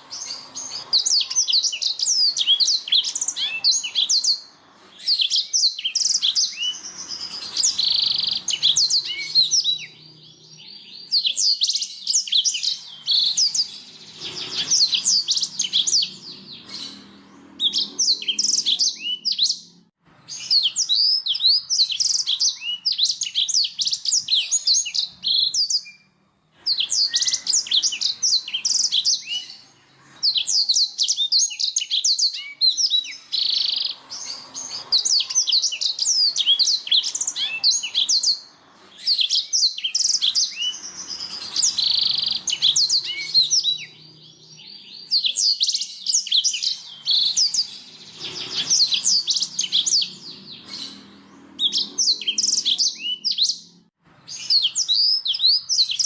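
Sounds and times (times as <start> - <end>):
canary singing: 0.0 - 56.0.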